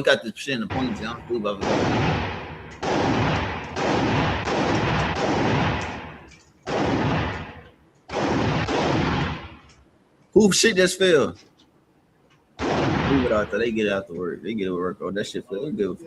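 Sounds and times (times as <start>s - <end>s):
gunshots with rumbling echo: 0.7s - 9.8s, 12.6s - 14.0s.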